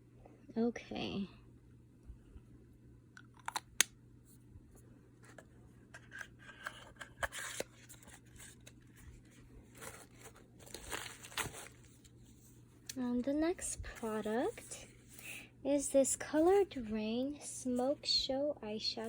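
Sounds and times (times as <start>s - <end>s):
packaging clicks: 3.2s - 3.9s
packaging rustling and crinkling: 6.0s - 12.3s.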